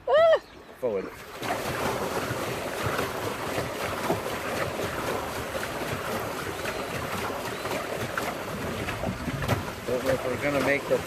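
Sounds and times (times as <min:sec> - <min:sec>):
water churning and splashing: 0:00.0 - 0:11.0
wind buffeting microphone: 0:08.4 - 0:11.0.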